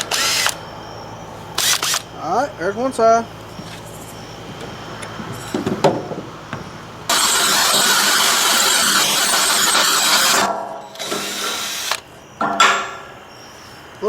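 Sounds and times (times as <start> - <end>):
drill motor whining: 0.0 - 0.6, 7.1 - 12.1
compressed air blower hissing: 7.0 - 12.0.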